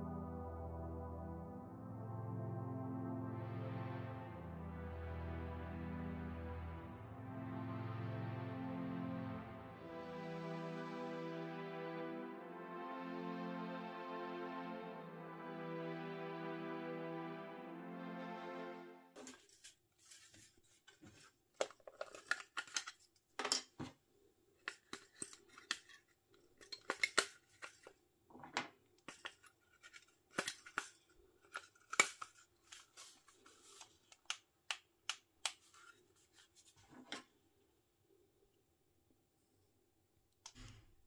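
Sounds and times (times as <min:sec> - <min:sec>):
plastic parts clicking and scraping: 0:19.2 - 0:24.0, 0:24.6 - 0:37.3.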